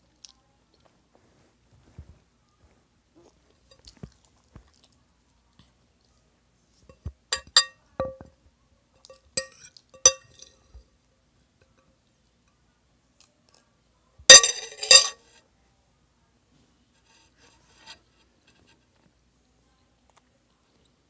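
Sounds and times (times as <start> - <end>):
utensil clinking on a dish: 6.9 - 8.3, 9.0 - 10.8, 14.3 - 15.2.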